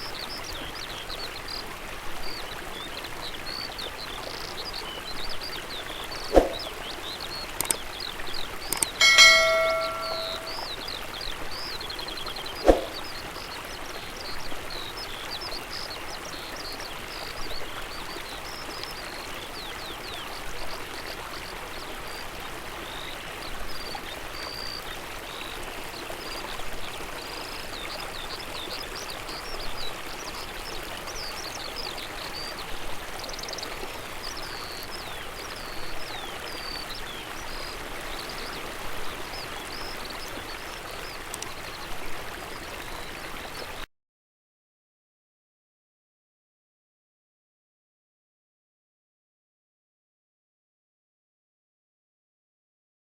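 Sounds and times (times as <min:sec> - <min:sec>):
small birds chirping: 0:00.0 - 0:20.3
stream flowing: 0:00.0 - 0:43.8.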